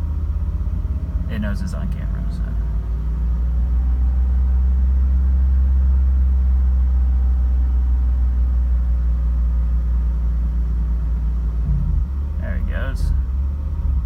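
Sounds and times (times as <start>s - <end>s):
car engine droning steadily: 0.0s - 14.0s.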